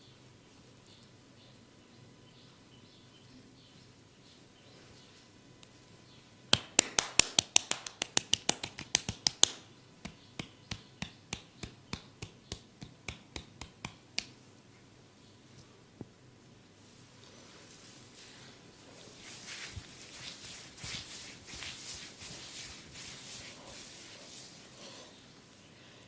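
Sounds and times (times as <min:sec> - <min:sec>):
hand snaps during massage: 0:06.5 - 0:14.4.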